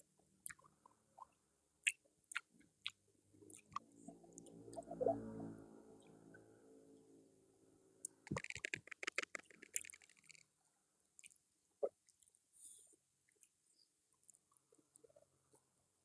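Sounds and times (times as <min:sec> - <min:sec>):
small clicks: 0:08.3 - 0:10.4.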